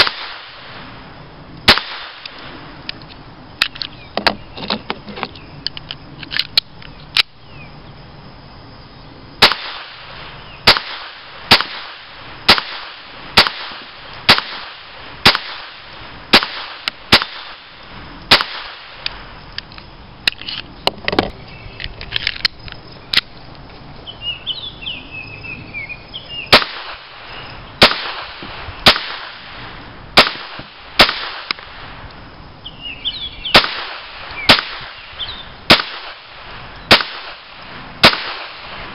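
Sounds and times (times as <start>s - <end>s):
pistol gunshots: 0.0s - 0.8s, 1.7s - 2.4s, 9.4s - 17.7s, 18.3s - 19.0s, 26.5s - 27.2s, 27.8s - 29.6s, 30.2s - 31.9s, 33.5s - 35.0s, 35.7s - 38.9s
bird chirping: 3.7s - 5.8s, 6.7s - 8.1s, 10.4s - 10.7s, 19.8s - 22.1s, 24.0s - 26.6s, 27.2s - 27.8s, 32.6s - 33.6s, 34.3s - 35.6s.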